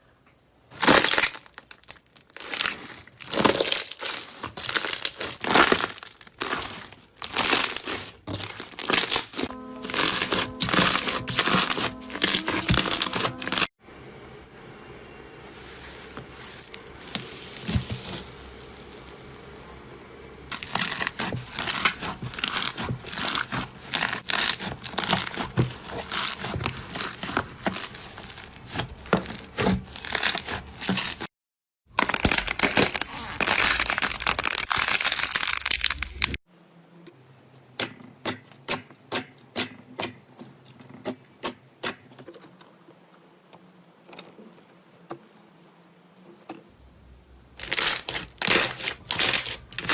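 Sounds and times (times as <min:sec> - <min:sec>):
slime crackling and popping: 0:00.7 - 0:13.7, 0:17.0 - 0:31.2, 0:31.9 - 0:36.4, 0:47.6 - 0:49.9.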